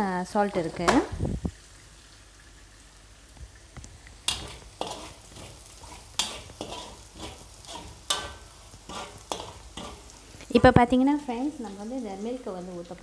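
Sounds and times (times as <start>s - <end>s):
food sizzling in a pan: 0.0s - 13.0s
spoon scraping and knocking a pan: 4.3s - 10.4s.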